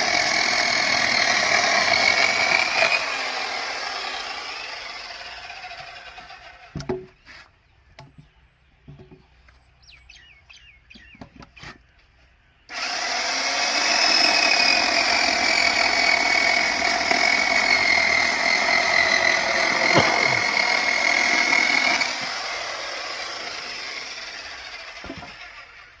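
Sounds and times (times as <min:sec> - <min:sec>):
electric chainsaw running: 0:00.0 - 0:06.7, 0:12.7 - 0:26.0.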